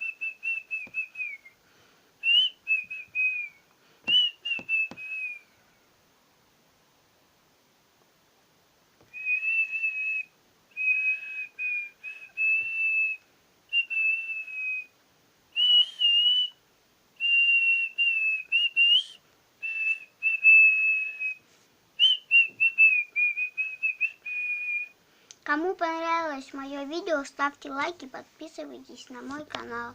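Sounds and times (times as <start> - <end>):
person whistling a tune: 0.0 - 1.6, 2.2 - 5.5, 9.1 - 14.9, 15.6 - 16.6, 17.2 - 21.4, 22.0 - 24.9.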